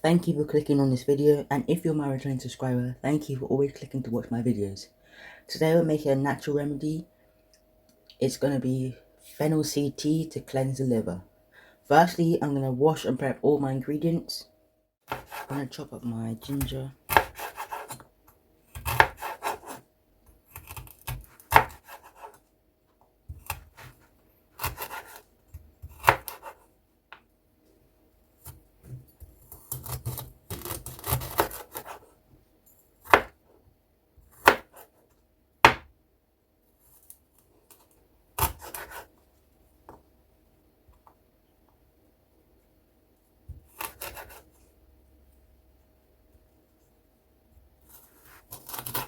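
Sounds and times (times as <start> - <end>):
knife chopping on cutting board: 15.1 - 15.6, 16.5 - 18.1, 18.8 - 19.8, 20.5 - 22.4, 23.3 - 24.0, 24.6 - 26.6, 33.0 - 33.4, 34.3 - 34.9, 35.6 - 35.9, 38.4 - 39.1, 43.5 - 44.4.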